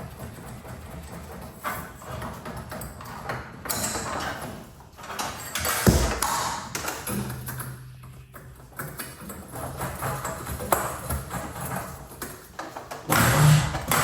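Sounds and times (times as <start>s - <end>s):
loud knock: 5.9s - 6.6s.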